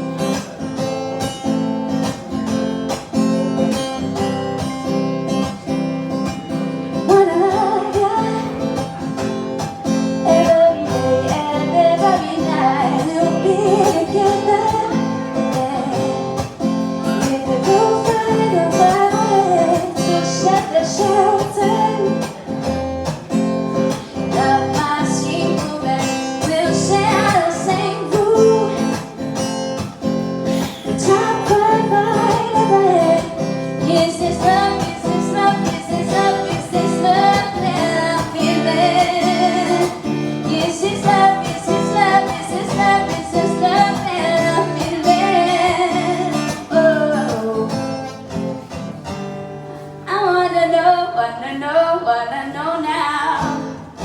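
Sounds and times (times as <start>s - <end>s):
acoustic guitar strumming: 0.0s - 50.7s
person singing: 24.2s - 29.2s, 30.6s - 48.2s.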